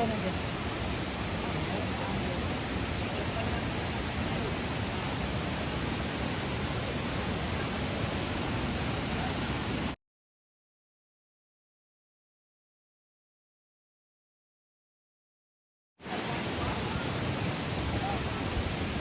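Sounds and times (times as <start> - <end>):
waterfall rushing: 0.0 - 10.0, 16.0 - 19.0.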